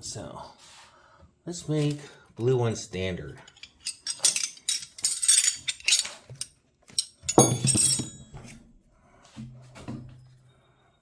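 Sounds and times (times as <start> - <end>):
steel wrenches clinking: 3.5 - 8.3.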